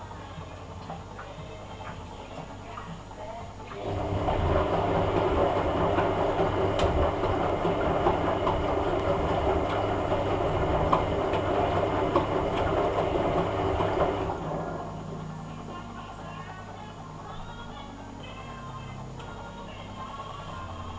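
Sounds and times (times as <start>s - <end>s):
washing machine motor hum: 0.0s - 20.9s
laundry sloshing: 1.4s - 16.0s.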